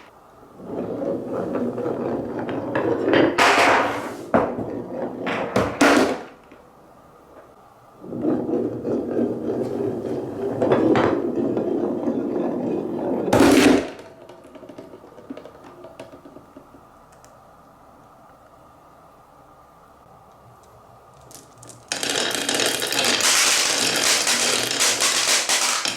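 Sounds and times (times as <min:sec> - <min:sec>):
ball rolling on wooden rail: 0:00.0 - 0:06.6, 0:07.3 - 0:17.6, 0:21.1 - 0:25.9
marbles clacking: 0:21.2 - 0:25.9.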